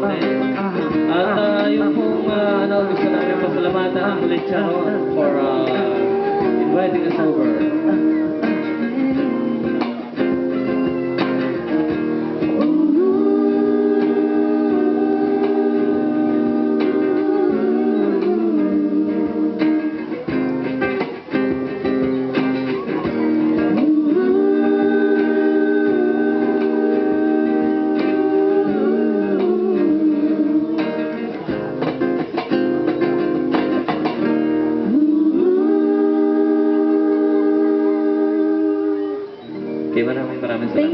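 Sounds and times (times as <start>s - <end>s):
sliding melody line: 0.0s - 38.8s
acoustic guitar accompaniment: 0.0s - 40.9s.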